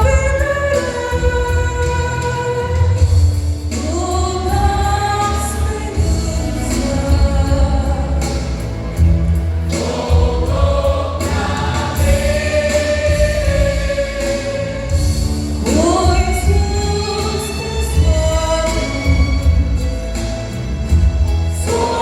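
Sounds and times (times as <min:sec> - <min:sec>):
instrumental backing: 0:00.0 - 0:22.0
vocal group singing in harmony: 0:03.7 - 0:20.0, 0:21.5 - 0:22.0.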